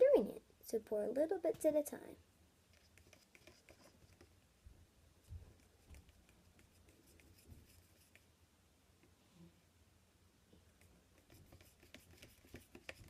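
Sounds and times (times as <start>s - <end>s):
spoon stirring slime in plastic bowl: 2.7s - 4.4s, 10.8s - 13.0s.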